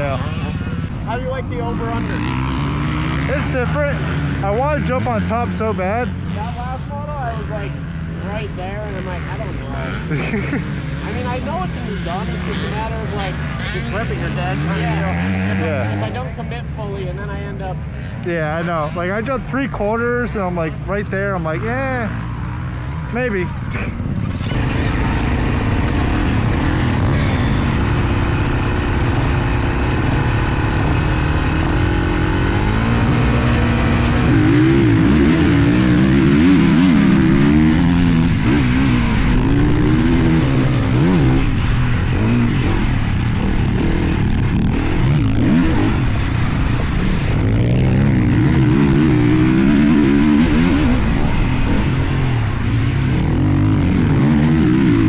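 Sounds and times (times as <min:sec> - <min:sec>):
motocross bike engines revving: 0:00.0 - 0:55.0.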